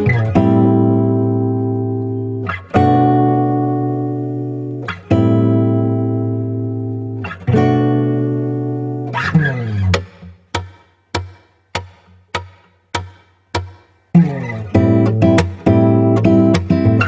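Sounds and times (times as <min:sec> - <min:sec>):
acoustic guitar chords: 0:00.0 - 0:17.0
muted guitar hits: 0:09.9 - 0:14.4.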